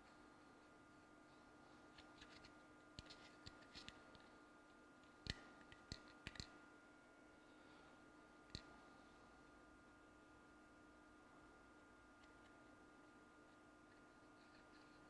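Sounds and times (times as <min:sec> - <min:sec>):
faint steady hum: 0:00.0 - 0:15.0
turntable mechanism clicks and taps: 0:05.3 - 0:06.5.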